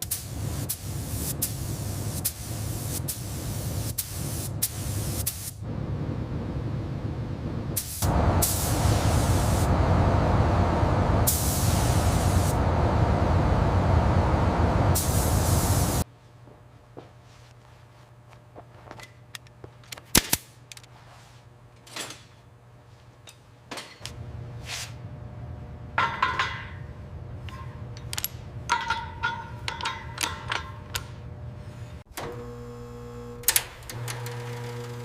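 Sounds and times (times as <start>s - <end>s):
loud hissing spray: 0.0s - 5.6s, 7.8s - 13.1s, 14.2s - 16.0s
low steady hum: 0.3s - 33.6s
hand tools on metal parts: 26.0s - 31.2s.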